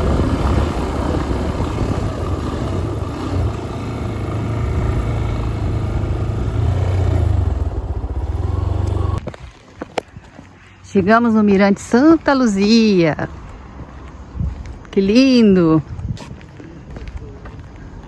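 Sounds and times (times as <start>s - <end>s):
motorcycle engine rumble: 0.0s - 10.5s
road and wind noise: 0.0s - 18.0s.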